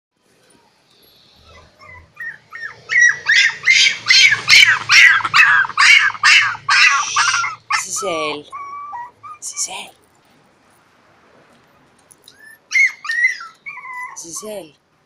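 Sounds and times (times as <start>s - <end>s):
puppy yapping: 1.4s - 9.5s, 12.3s - 14.6s.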